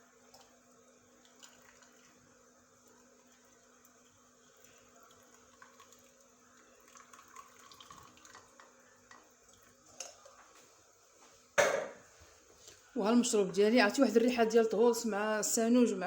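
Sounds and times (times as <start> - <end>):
liquid trickling and dripping: 1.2 - 10.6.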